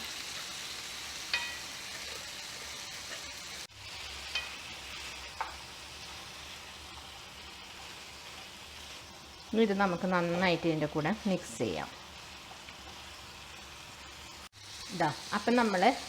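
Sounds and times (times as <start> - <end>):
meat sizzling in a hot pan: 0.0 - 16.0
spoon clinking against pan: 1.3 - 1.7.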